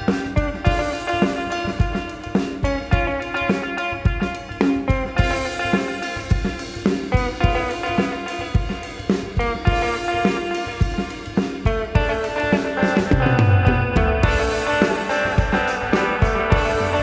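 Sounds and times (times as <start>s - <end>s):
electric guitar ringing notes: 0.0s - 17.0s
steady drum beat: 0.0s - 17.0s.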